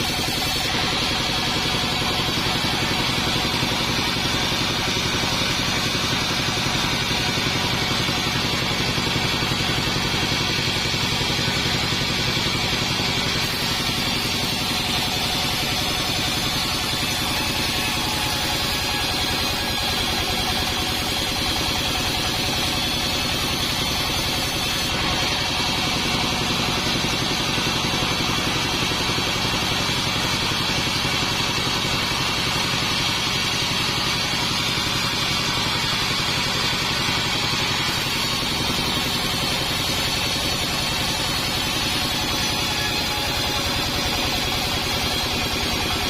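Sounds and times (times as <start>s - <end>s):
bandsaw sawmill running: 0.0s - 46.0s.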